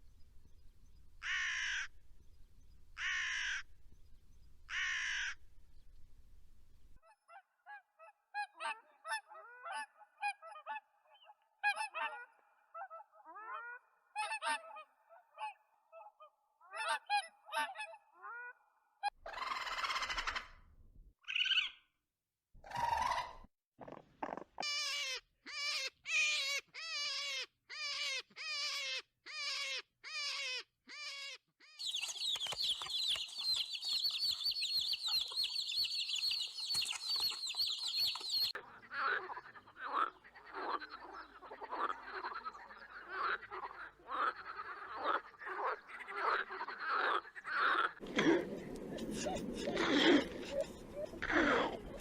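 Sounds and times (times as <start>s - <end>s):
calls falling in pitch: 31.8s - 38.5s.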